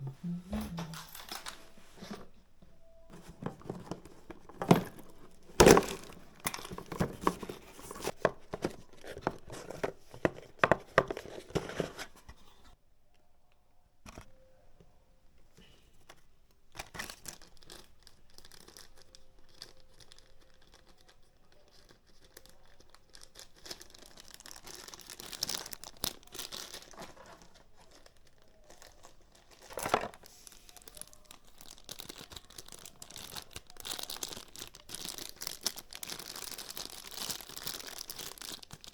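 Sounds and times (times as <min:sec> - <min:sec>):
packaging rustling: 0:03.1 - 0:12.4, 0:16.8 - 0:38.9
packaging tearing and crinkling: 0:03.2 - 0:08.2, 0:16.7 - 0:38.9.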